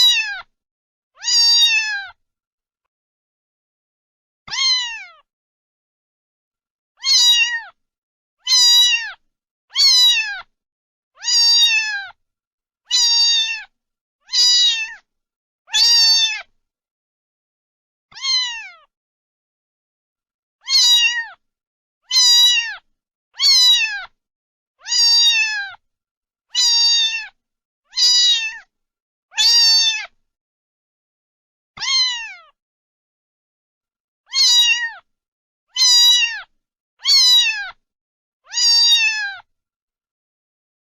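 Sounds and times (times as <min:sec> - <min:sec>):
cat meowing: 0:00.0 - 0:00.5, 0:01.2 - 0:02.2, 0:04.5 - 0:05.3, 0:07.0 - 0:07.8, 0:08.4 - 0:10.5, 0:11.2 - 0:12.2, 0:12.9 - 0:13.7, 0:14.3 - 0:15.0, 0:15.7 - 0:16.5, 0:18.1 - 0:18.9, 0:20.6 - 0:21.4, 0:22.1 - 0:24.2, 0:24.8 - 0:25.8, 0:26.5 - 0:28.7, 0:29.3 - 0:30.2, 0:31.8 - 0:32.6, 0:34.3 - 0:35.1, 0:35.7 - 0:37.8, 0:38.5 - 0:39.5.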